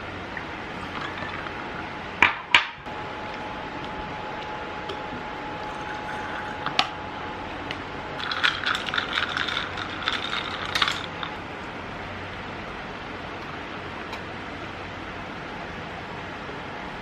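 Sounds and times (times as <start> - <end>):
faint steady hum: 0.0 - 17.0
dishes rattling and clinking: 0.8 - 1.6, 5.6 - 6.9, 8.2 - 11.4.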